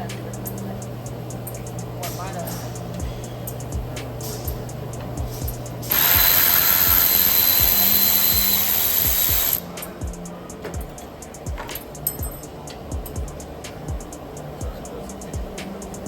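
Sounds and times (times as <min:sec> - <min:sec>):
background music with beat: 0:00.0 - 0:16.0
power tool hissing: 0:05.8 - 0:09.6.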